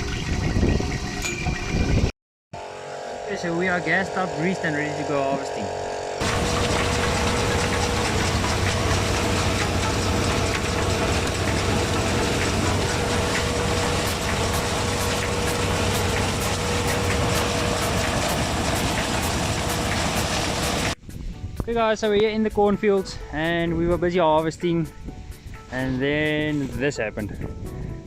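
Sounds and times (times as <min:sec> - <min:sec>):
combine harvester running: 0:02.6 - 0:21.0
regular mechanical ticking: 0:06.2 - 0:21.0.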